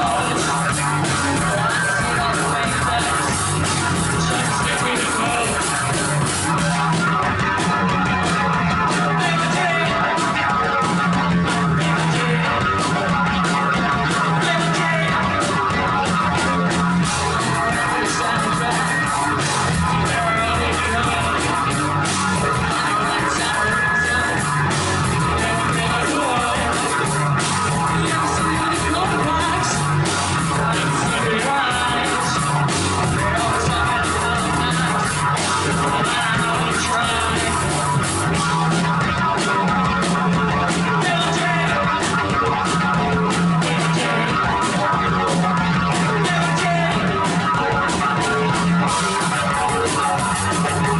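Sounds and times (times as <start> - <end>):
drums: 0.0 - 50.9
electric guitar: 0.0 - 50.9
rock band playing live: 0.0 - 50.9.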